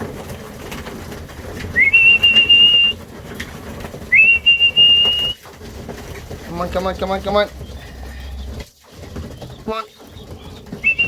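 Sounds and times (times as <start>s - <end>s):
rising whistle call: 1.8s - 3.0s, 4.1s - 5.4s.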